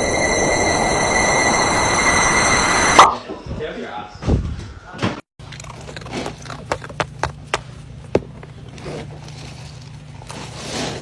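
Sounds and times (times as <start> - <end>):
steady low hum: 0.0 - 3.1.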